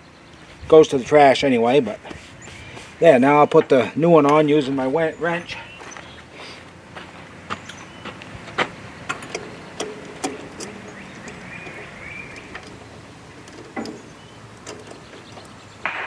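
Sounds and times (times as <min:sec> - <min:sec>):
hand tools clicking and knocking: 0:07.6 - 0:15.9.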